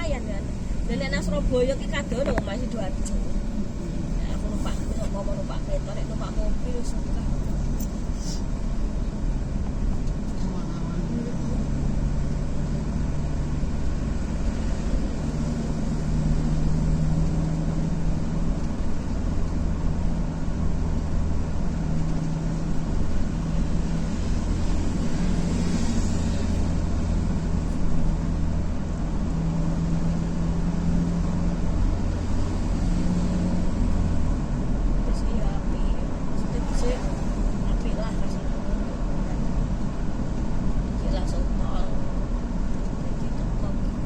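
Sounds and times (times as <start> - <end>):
low engine hum: 0.0 - 44.0
tyre and road hiss: 0.2 - 10.8, 21.8 - 29.6.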